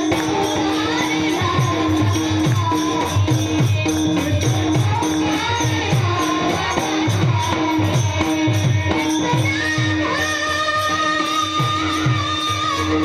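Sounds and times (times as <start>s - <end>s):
jingling metal percussion: 0.0s - 13.0s
mridang drum strokes: 0.0s - 13.0s.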